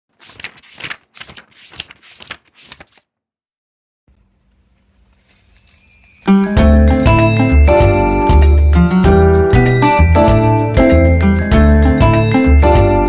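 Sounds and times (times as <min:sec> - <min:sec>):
jingly music with bell tones: 0:05.0 - 0:13.0.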